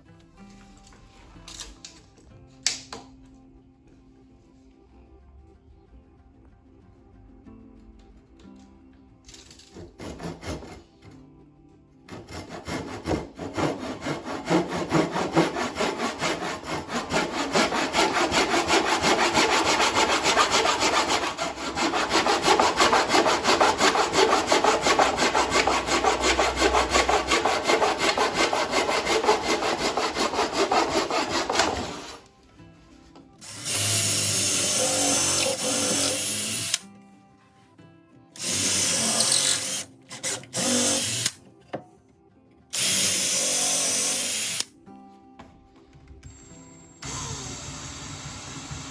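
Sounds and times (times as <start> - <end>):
hand saw cutting wood: 9.7 - 11.1, 12.1 - 32.3, 33.6 - 36.8, 38.4 - 41.4
power drill: 13.6 - 32.2, 33.4 - 36.8, 38.4 - 41.4, 42.8 - 44.7, 46.4 - 48.9.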